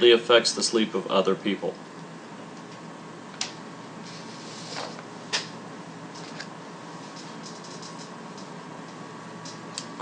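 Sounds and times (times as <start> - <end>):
hiss and faint hum: 0.0 - 10.0.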